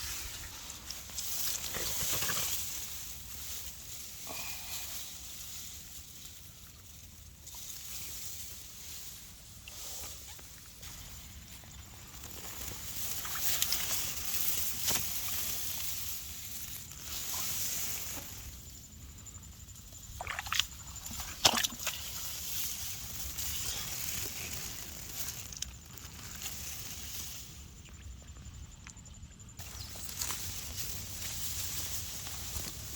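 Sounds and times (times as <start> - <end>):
water sloshing and splashing: 20.2 - 22.6.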